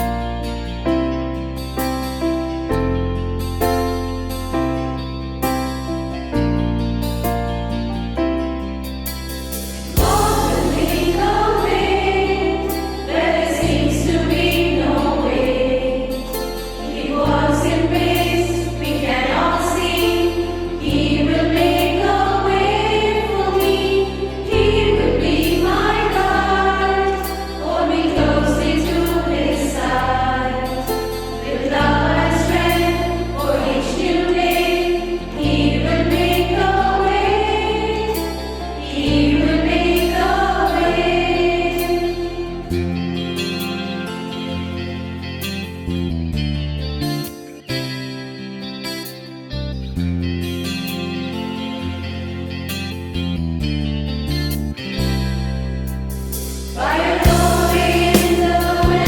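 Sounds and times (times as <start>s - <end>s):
choir singing a hymn: 9.9s - 45.0s, 56.7s - 59.0s
instrumental accompaniment: 56.6s - 59.0s.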